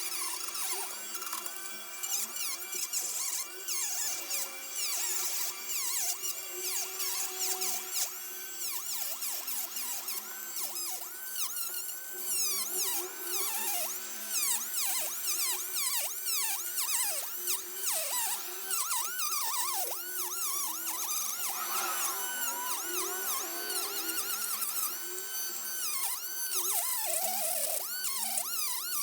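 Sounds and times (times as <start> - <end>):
high-speed rotary tool whining: 0.0 - 29.0.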